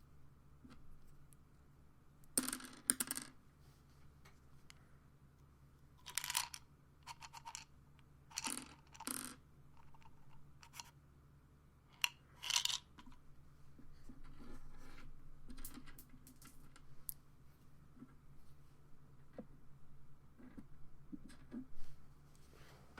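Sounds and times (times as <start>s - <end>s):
pills rattling in bottle: 6.0s - 7.7s, 8.3s - 9.1s, 12.0s - 13.0s
soft rustle: 21.8s - 22.9s.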